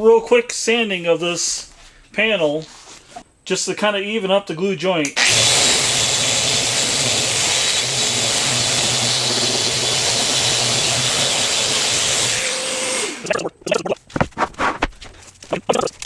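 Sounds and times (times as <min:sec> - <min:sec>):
electric sander running: 0:05.2 - 0:13.3.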